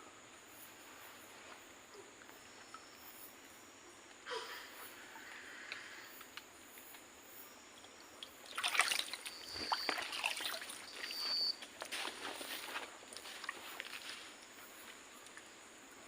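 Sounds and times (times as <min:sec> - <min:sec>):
stream water splashing: 0:08.0 - 0:14.5
high-pitched whistle tones: 0:09.3 - 0:11.6.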